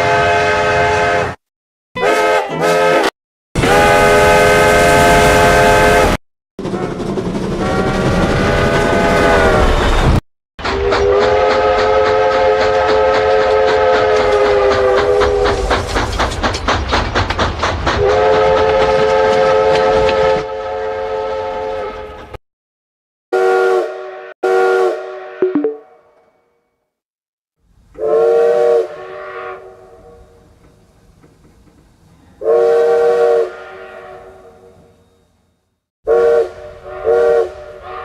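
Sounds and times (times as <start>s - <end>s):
train rumbling and clattering: 6.6s - 20.5s, 30.4s - 32.4s
train chime whistle: 25.2s - 25.9s.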